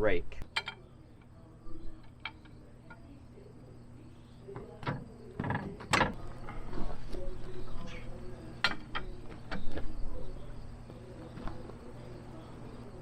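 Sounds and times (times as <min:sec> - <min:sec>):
metal clanks and knocks: 0:00.5 - 0:00.9, 0:04.5 - 0:06.8, 0:08.6 - 0:09.9.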